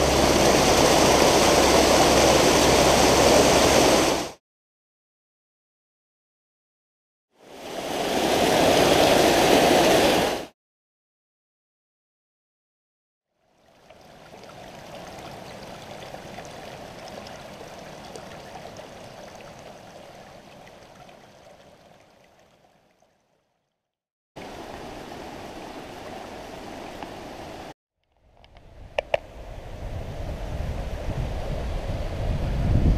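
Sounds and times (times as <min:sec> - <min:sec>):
stream water rushing: 0:00.0 - 0:04.4, 0:07.4 - 0:10.5, 0:13.4 - 0:23.4, 0:24.4 - 0:27.7.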